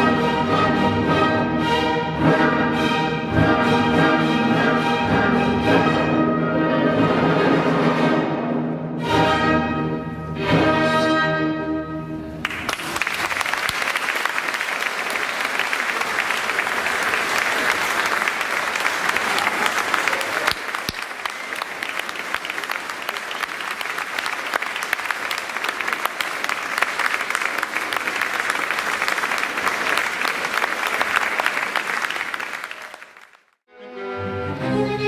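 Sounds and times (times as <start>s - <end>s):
orchestra bowed strings: 0.0s - 12.4s, 33.7s - 35.0s
audience applauding: 12.4s - 33.6s.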